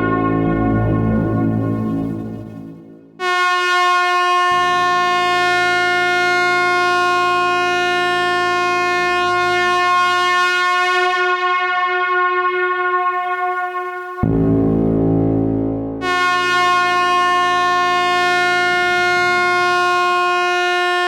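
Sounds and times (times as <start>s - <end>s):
truck air horn blasting: 0.0s - 6.4s.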